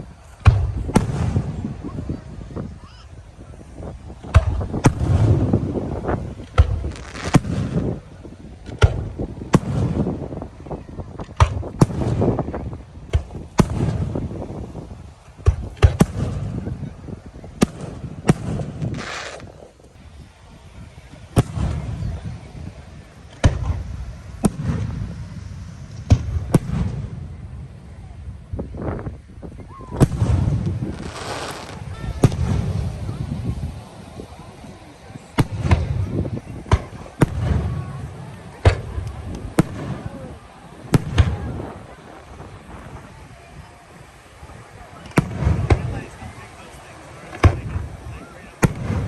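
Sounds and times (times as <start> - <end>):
fireworks cracking and banging: 0.0 - 19.8, 21.2 - 27.5, 29.9 - 49.0.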